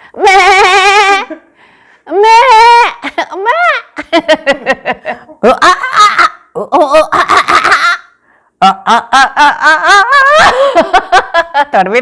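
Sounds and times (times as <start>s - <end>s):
people laughing: 6.9s - 8.0s, 8.6s - 11.7s.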